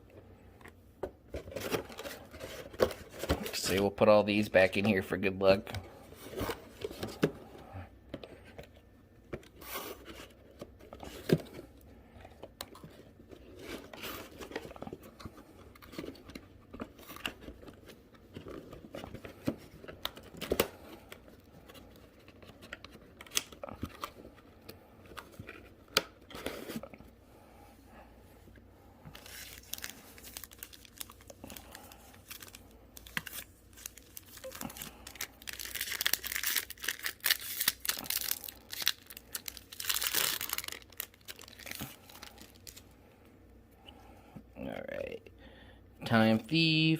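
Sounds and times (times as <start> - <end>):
foil wrappers crinkling and tearing: 29.1 - 42.9.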